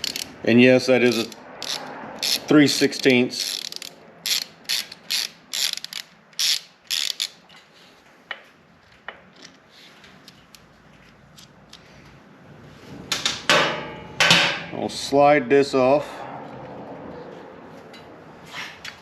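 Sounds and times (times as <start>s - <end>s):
hand ratchet clicking: 0.0s - 0.4s, 1.1s - 7.4s.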